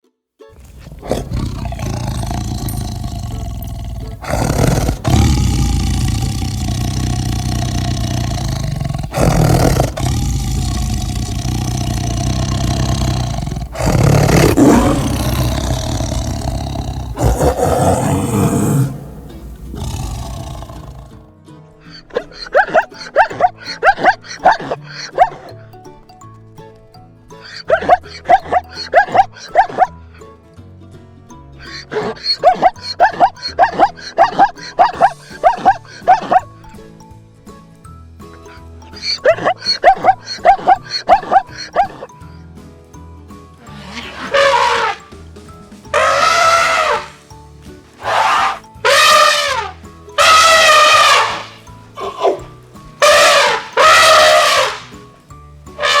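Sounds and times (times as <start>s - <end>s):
background music: 0.4s - 56.0s
big cat roaring: 0.6s - 21.3s, 43.7s - 45.2s, 45.9s - 47.4s, 48.0s - 55.0s, 55.8s - 56.0s.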